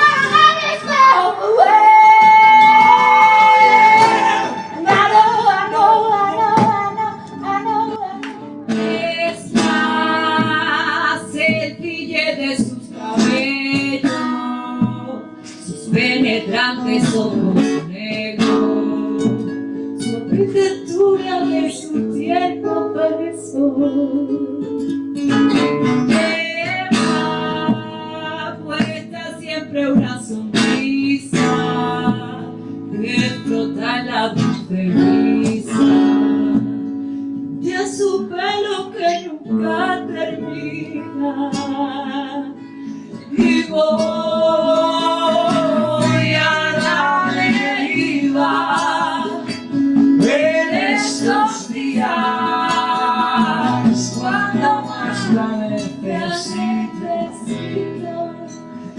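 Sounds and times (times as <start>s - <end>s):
person singing long notes: 0.0s - 8.2s
acoustic guitar playing: 0.0s - 58.9s.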